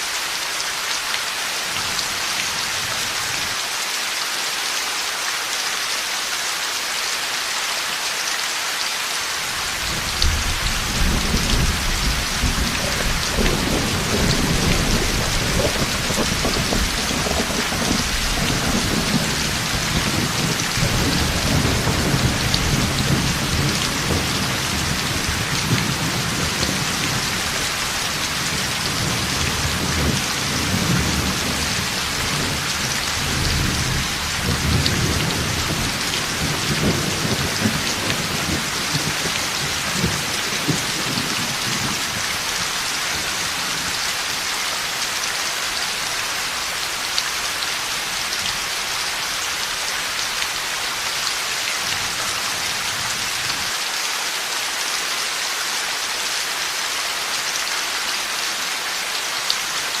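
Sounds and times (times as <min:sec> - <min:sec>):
heavy rain falling: 0:00.0 - 1:00.0
low rumble of thunder: 0:09.8 - 0:42.3.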